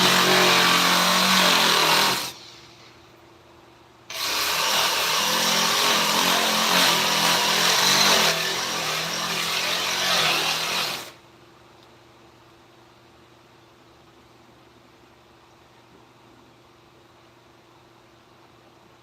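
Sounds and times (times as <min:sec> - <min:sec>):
power tool whirring on wood: 0:00.0 - 0:02.4, 0:04.1 - 0:11.2.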